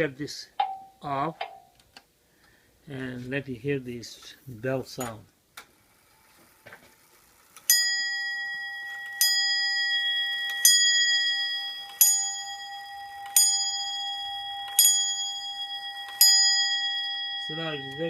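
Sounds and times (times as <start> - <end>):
clock striking bell: 7.7 - 18.0.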